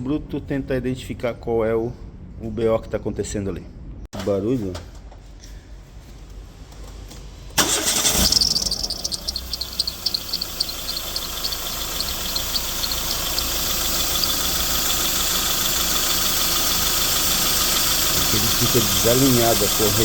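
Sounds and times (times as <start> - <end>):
engine cranking and starting: 7.6 - 20.0
engine running: 7.6 - 20.0
belt chirping: 7.9 - 16.1.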